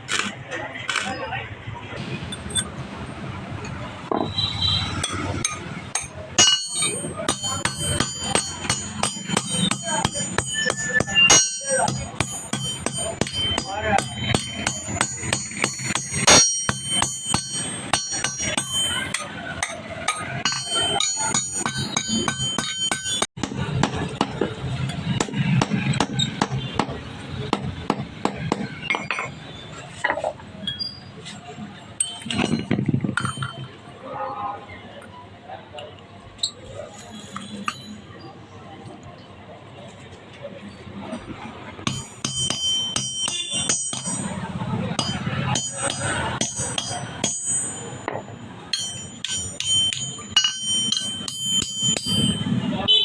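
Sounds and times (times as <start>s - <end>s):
hammer striking steel on anvil: 5.0s - 24.5s, 25.2s - 29.3s, 41.8s - 44.4s, 45.0s - 52.5s.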